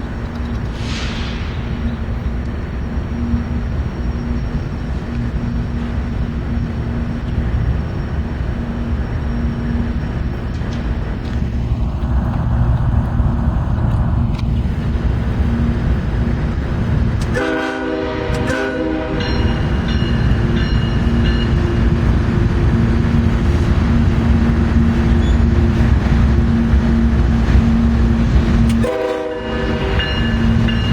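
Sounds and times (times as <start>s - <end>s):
freight train rumbling past: 0.0s - 30.9s
locomotive air horn blast: 17.2s - 19.5s, 28.7s - 30.2s.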